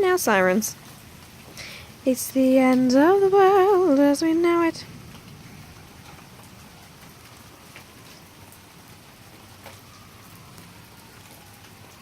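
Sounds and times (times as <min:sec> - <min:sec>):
steady rain falling: 0:00.0 - 0:12.0
faint drips: 0:00.6 - 0:03.0.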